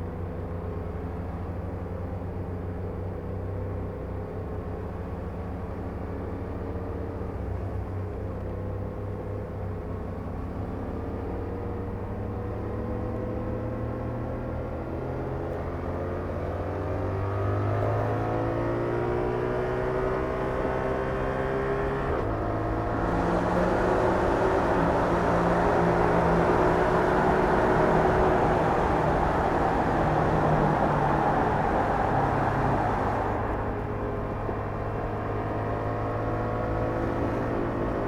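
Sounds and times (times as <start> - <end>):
road noise rushing: 22.0 - 35.0.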